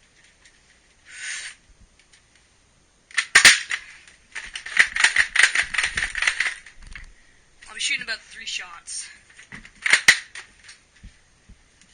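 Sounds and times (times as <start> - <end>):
short hiss-like burst: 1.0 - 1.6
toy dart rifle firing crack: 3.1 - 3.9, 9.8 - 10.4
clicks and rattles: 3.1 - 7.1.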